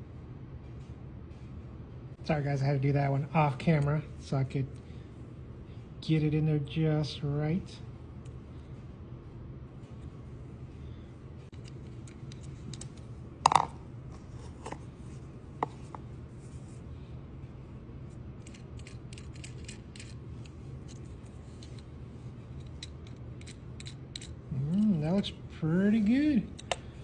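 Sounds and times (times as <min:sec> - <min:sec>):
steady low hum: 0:00.0 - 0:27.0
hand tools clicking on toy car: 0:18.4 - 0:20.2, 0:22.6 - 0:24.3.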